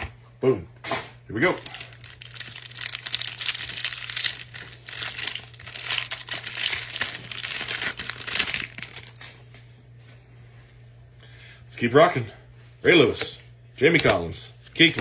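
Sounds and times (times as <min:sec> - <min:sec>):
foil wrapper crinkling: 0:01.3 - 0:09.5.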